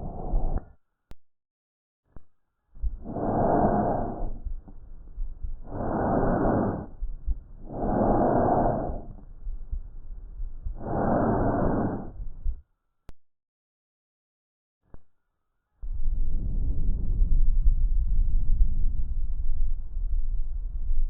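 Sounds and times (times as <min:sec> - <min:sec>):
airy breath sounds: 0:00.0 - 0:00.8, 0:02.8 - 0:12.6.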